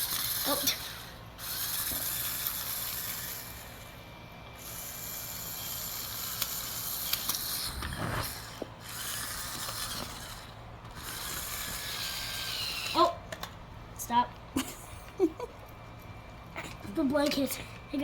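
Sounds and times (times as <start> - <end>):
toy car motor whirring: 0.0 - 13.5.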